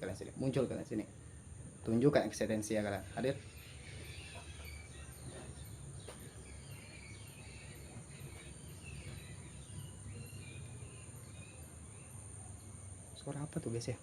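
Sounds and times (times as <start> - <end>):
insect chirping: 0.0 - 14.0
insects trilling: 0.0 - 14.0
low steady hum: 0.0 - 14.0
short insect calls: 2.6 - 14.0.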